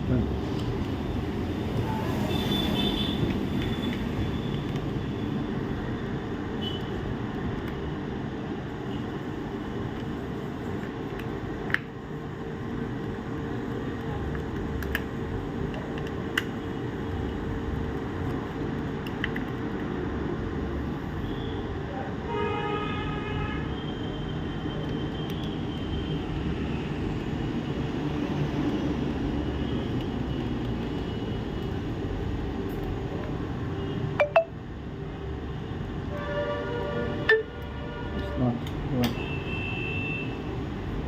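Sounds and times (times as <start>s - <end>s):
sharp clicks of small parts: 18.2s - 19.9s.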